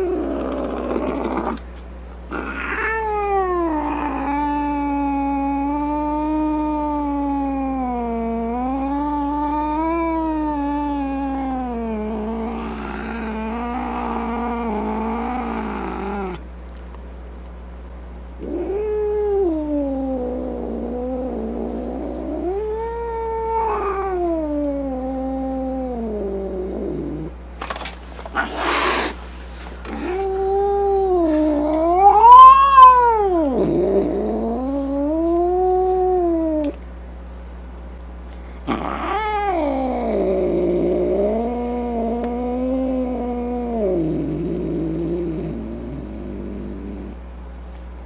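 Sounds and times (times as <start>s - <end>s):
cat hissing: 0.0s - 1.7s, 2.3s - 16.4s, 18.4s - 27.3s, 28.2s - 36.8s, 38.4s - 47.2s
cat yowling: 2.3s - 16.4s, 18.4s - 27.2s, 29.9s - 36.8s, 38.7s - 44.1s.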